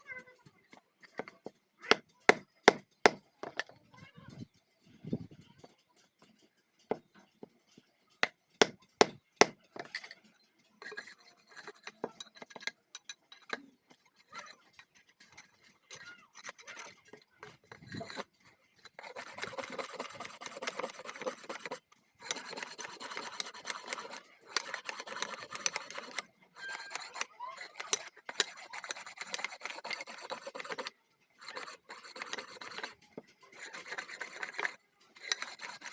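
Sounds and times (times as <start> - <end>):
tool rasping bamboo handle: 1.1 - 3.7, 8.2 - 9.7, 10.8 - 12.7, 13.5 - 35.9.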